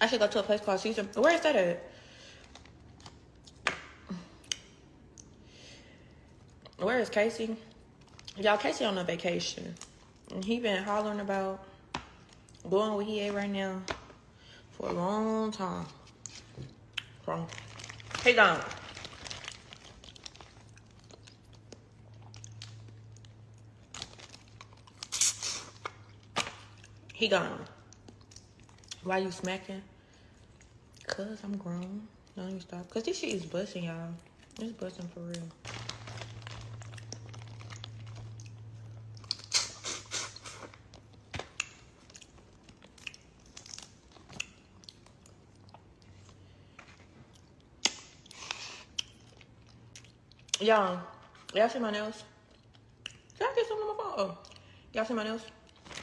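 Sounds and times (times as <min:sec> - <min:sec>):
low steady hum: 0:00.0 - 0:56.0
wet chewing and lip-smacking: 0:19.8 - 0:27.1, 0:27.8 - 0:29.0, 0:36.5 - 0:46.4, 0:47.3 - 0:50.6, 0:52.4 - 0:53.4.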